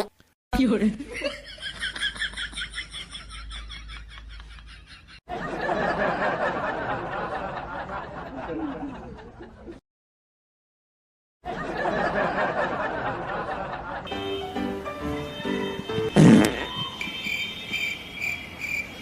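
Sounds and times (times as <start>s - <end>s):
people laughing: 1.0s - 9.8s, 11.5s - 14.1s.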